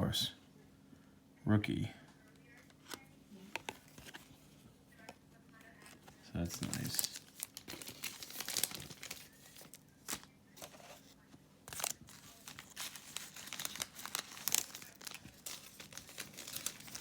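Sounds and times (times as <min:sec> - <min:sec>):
packaging crinkling and rustling: 0:05.7 - 0:17.0.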